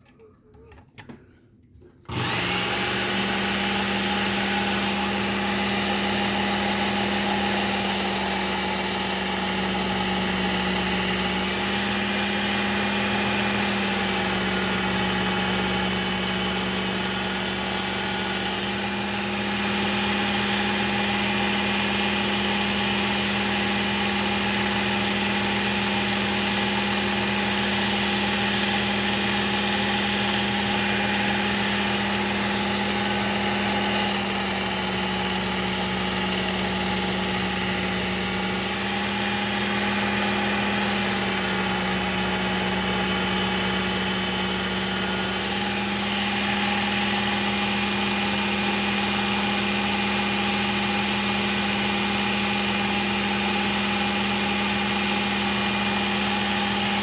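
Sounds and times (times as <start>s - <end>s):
belt sharpener motor humming: 2.0s - 50.0s
knife grinding on belt: 40.7s - 45.5s.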